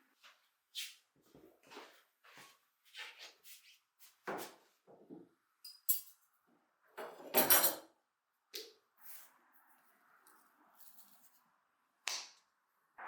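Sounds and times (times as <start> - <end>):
cutlery and dishes clinking: 5.6 - 6.2, 7.0 - 7.9.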